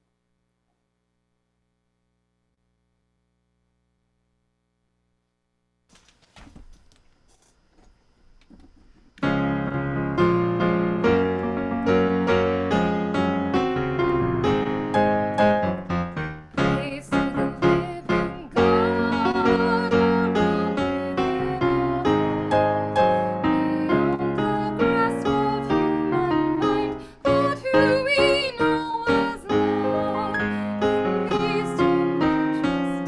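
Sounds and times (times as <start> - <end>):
piano music: 9.2 - 33.0.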